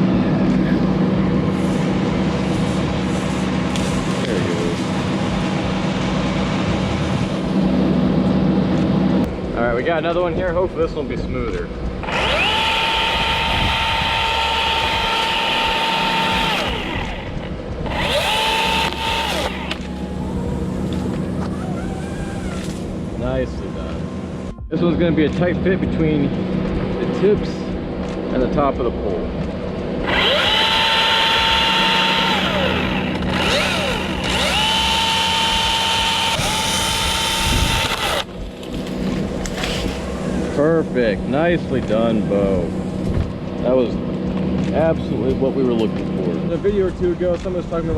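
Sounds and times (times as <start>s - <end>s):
electric chainsaw whining: 12.0s - 23.0s, 30.0s - 40.6s.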